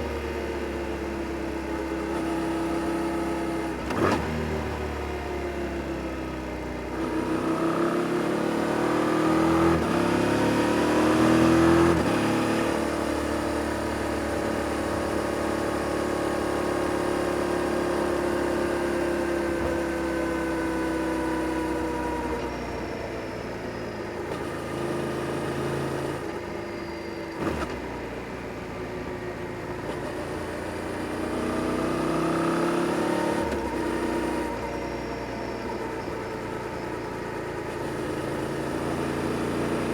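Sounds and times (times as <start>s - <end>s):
motorcycle engine revving: 29.8s - 34.8s.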